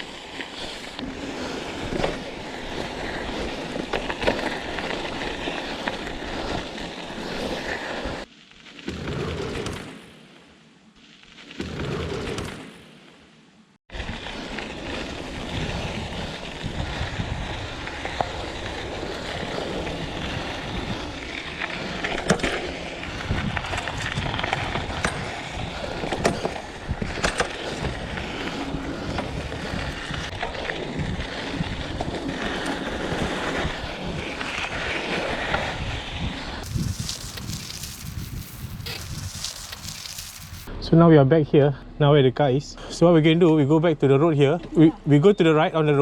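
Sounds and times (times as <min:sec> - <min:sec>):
bike tyres rumbling on dirt: 0:13.9 - 0:40.7
wind on microphone: 0:15.3 - 0:18.1, 0:23.0 - 0:32.3, 0:35.6 - 0:40.7.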